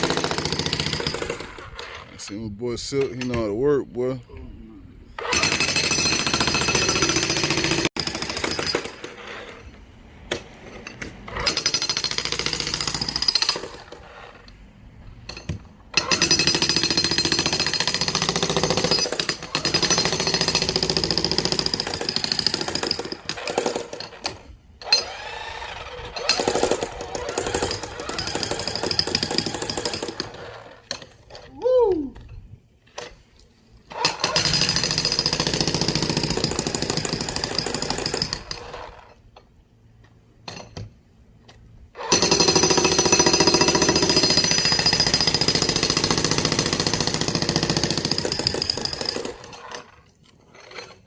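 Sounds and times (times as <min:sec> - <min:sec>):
jackhammer breaking concrete: 0:26.2 - 0:30.4, 0:34.0 - 0:38.7, 0:42.0 - 0:49.9.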